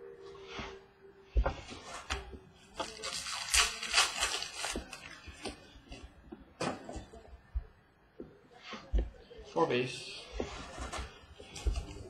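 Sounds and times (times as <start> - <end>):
cards rustling: 2.8 - 5.6.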